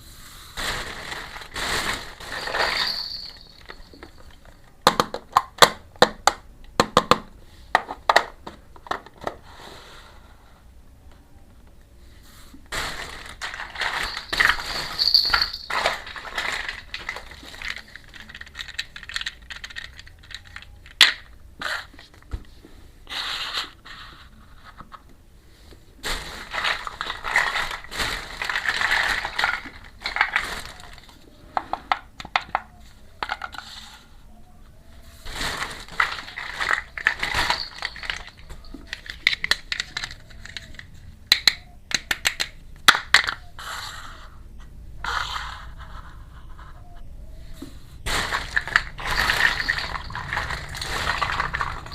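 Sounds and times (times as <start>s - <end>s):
packaging crinkling: 0.6s - 4.6s, 12.7s - 22.1s, 26.0s - 31.3s, 35.2s - 41.4s, 48.0s - 51.9s
small toy pieces clicking: 13.1s - 21.4s, 26.5s - 31.2s, 35.9s - 43.4s, 48.3s - 51.9s.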